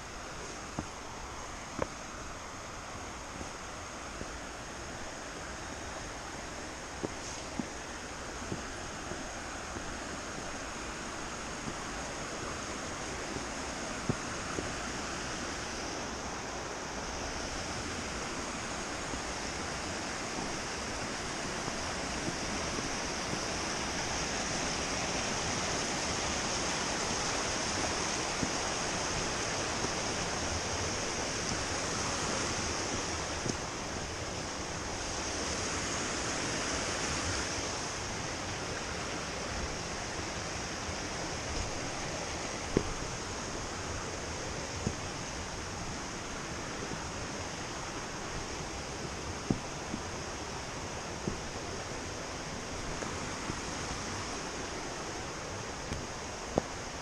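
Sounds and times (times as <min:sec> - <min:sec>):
flowing creek water: 0:00.0 - 0:57.0
high-pitched hiss: 0:00.0 - 0:57.0.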